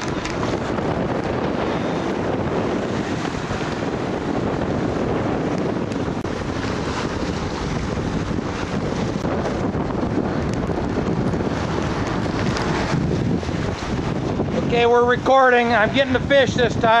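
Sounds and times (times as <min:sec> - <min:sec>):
water noise: 0:00.0 - 0:17.0
wind buffeting microphone: 0:00.0 - 0:17.0.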